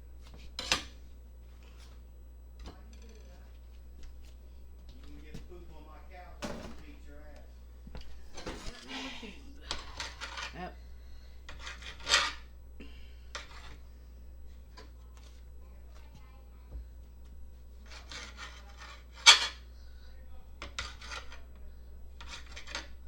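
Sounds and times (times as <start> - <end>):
utensils scraping pots and pans: 9.7 - 10.6, 11.5 - 12.5, 13.3 - 13.8, 17.8 - 19.7, 20.6 - 21.6, 22.2 - 23.0.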